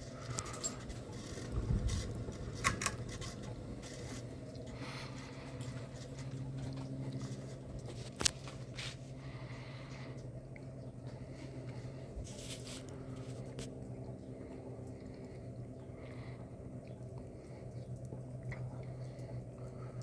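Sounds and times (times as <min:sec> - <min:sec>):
ceiling fan motor hum: 0:00.0 - 0:20.0.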